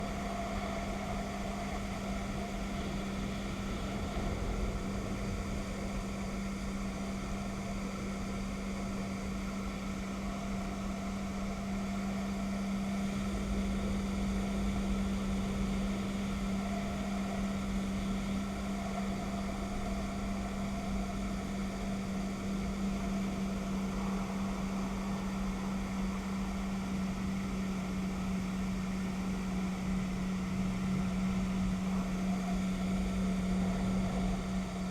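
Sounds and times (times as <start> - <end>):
jet ski engine running: 0.0 - 34.9.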